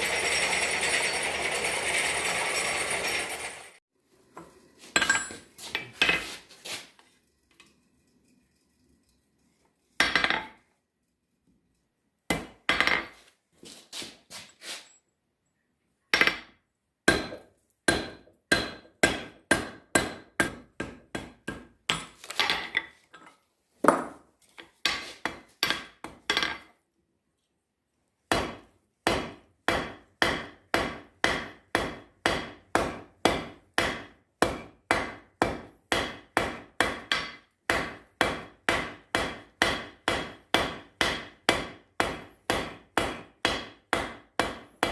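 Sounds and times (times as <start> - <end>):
hammer striking steel on anvil: 17.1 - 22.1, 28.3 - 44.9.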